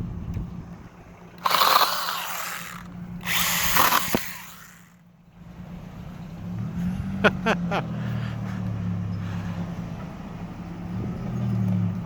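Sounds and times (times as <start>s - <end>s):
pocket chainsaw rasping through branch: 1.4s - 5.0s.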